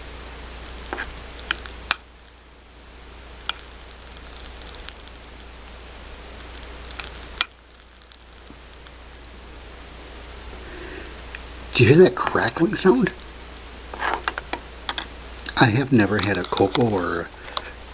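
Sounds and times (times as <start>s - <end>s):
powder crackling in liquid: 0.1s - 17.6s
sharp clicks: 0.6s - 2.5s, 3.4s - 5.8s, 6.4s - 9.3s.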